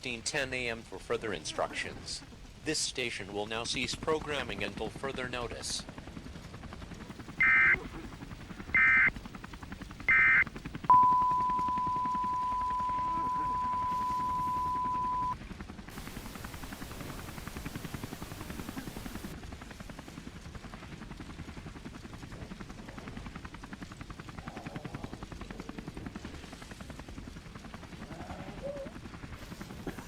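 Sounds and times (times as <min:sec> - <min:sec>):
helicopter rotor chopping: 0:00.1 - 0:30.0
high off-air tone: 0:10.1 - 0:15.4.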